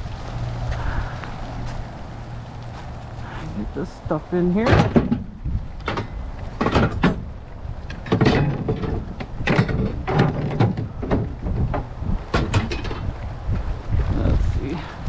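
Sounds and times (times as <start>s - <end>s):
objects knocking and clattering: 4.6s - 7.3s, 7.9s - 13.1s.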